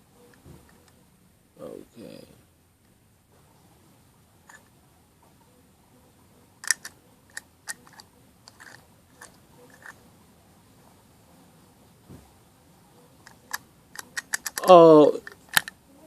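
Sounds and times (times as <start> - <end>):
padlock clicking and rattling: 6.6 - 10.0, 13.2 - 15.8.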